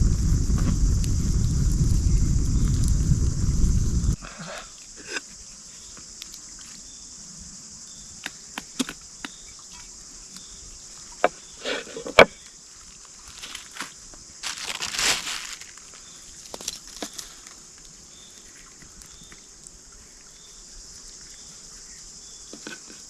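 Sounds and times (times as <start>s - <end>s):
high-pitched insect chorus: 0.0s - 23.0s
rustle: 0.0s - 23.0s.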